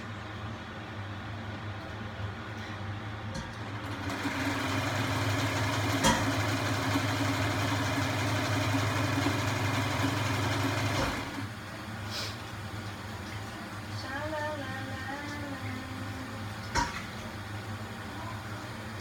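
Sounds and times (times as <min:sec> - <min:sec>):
electric sewing machine running: 0:03.6 - 0:11.6.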